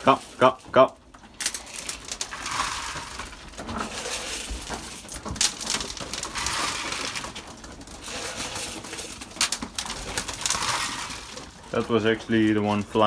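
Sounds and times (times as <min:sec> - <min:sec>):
grain rattling: 0:00.0 - 0:13.0.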